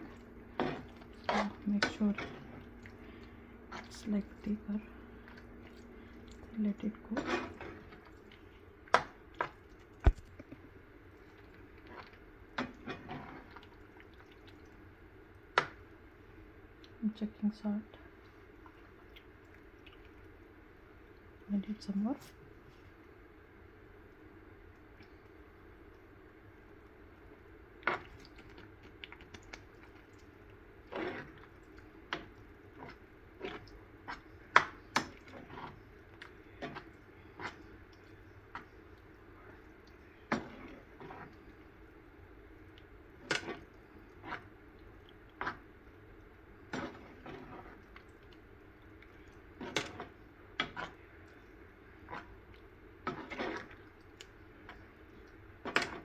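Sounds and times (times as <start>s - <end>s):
faint steady hum: 0.0s - 56.0s
thick mash knocking and plopping: 8.9s - 10.6s.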